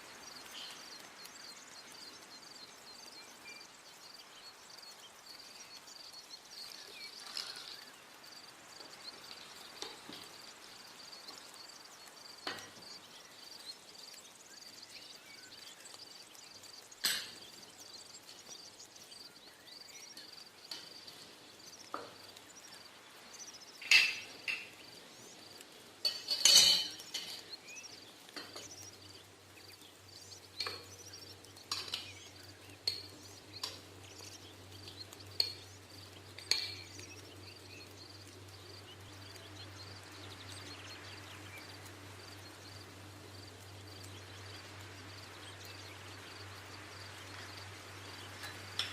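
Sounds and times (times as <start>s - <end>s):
metal utensils clinking on pots: 17.0s - 17.6s, 23.8s - 25.0s, 26.0s - 28.9s, 30.6s - 31.0s, 31.6s - 34.3s, 35.3s - 37.0s, 48.4s - 48.9s.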